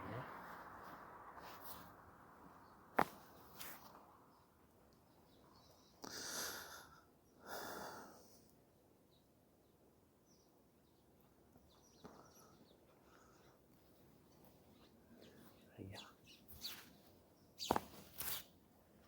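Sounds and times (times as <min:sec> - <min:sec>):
person breathing heavily: 0:06.0 - 0:08.3.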